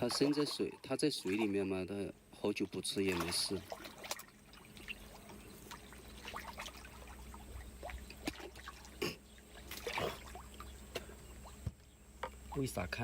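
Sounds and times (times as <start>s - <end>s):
water pouring into pond: 0.0s - 1.7s, 2.8s - 10.7s.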